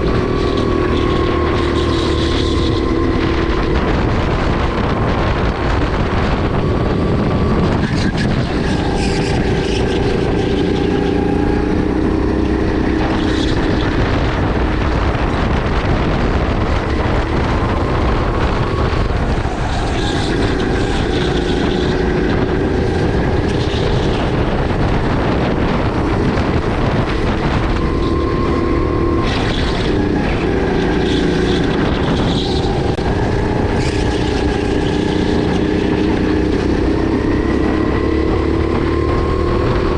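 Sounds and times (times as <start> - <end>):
kart engine running hard: 0.0 - 39.9
wind noise: 0.0 - 39.9.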